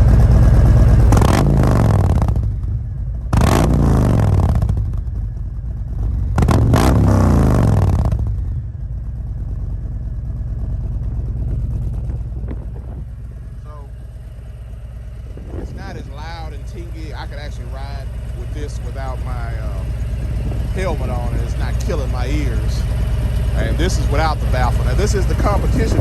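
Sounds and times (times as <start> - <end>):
motorcycle engine revving and idling: 0.0 - 26.0.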